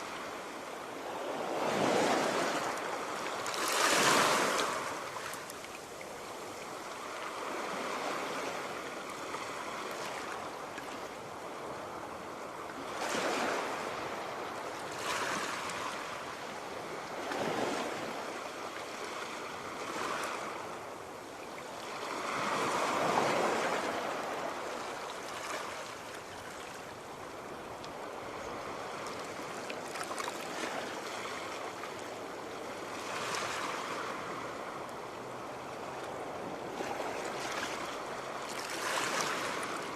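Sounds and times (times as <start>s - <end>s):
sea waves breaking on shore: 0.0s - 39.9s.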